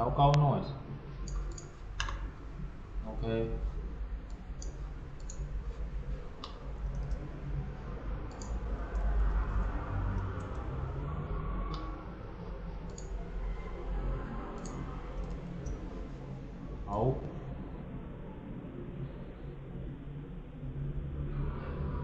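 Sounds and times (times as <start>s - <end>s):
low background hum: 0.0s - 22.0s
computer mouse clicks: 1.2s - 2.3s, 4.3s - 5.4s, 6.4s - 7.3s, 8.3s - 9.1s, 10.1s - 10.7s, 12.9s - 13.2s, 14.6s - 15.8s.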